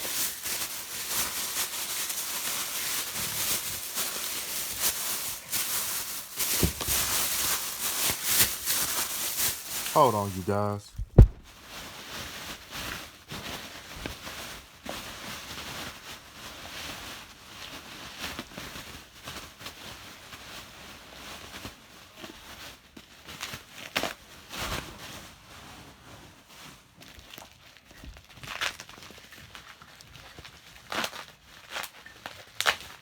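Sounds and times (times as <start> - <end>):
rustling and handling noises: 0.0 - 17.0
sharp knocks: 11.0 - 11.4.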